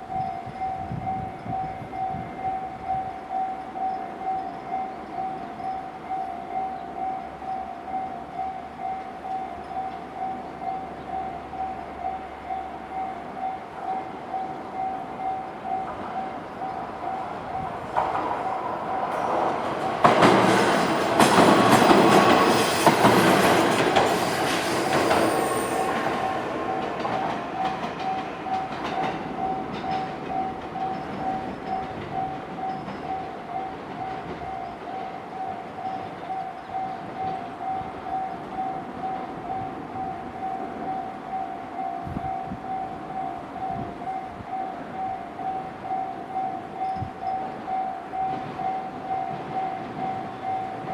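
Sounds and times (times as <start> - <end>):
train wheels rumbling on rails: 13.6 - 50.9.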